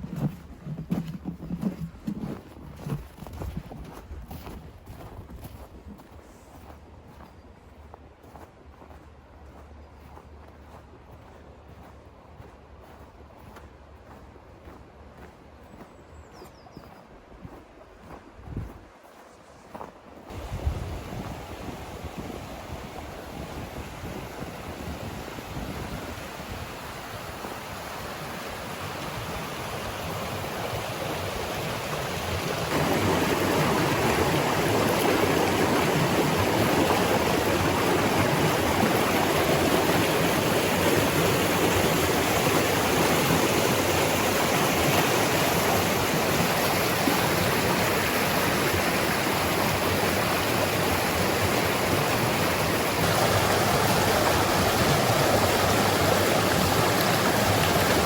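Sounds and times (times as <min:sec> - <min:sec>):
stream rushing over cascades: 0:20.3 - 0:58.0.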